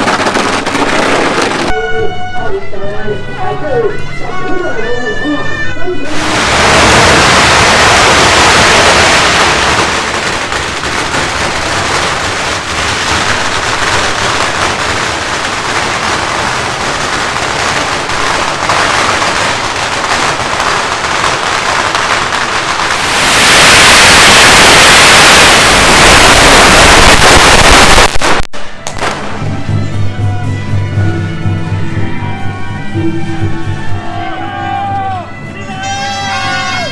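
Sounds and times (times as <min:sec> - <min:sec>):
firecrackers crackling: 0:00.0 - 0:01.8, 0:06.1 - 0:30.0.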